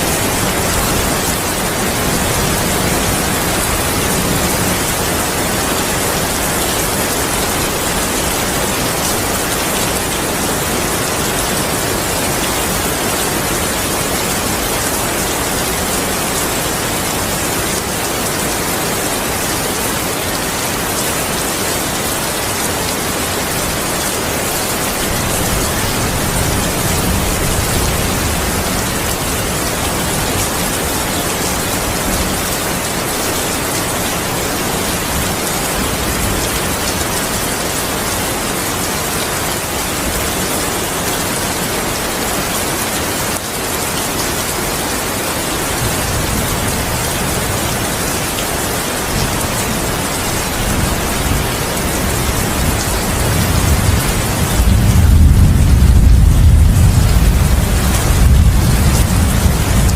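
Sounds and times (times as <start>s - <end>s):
heavy rain hissing: 0.0s - 59.9s
thunder rumbling: 52.2s - 59.9s.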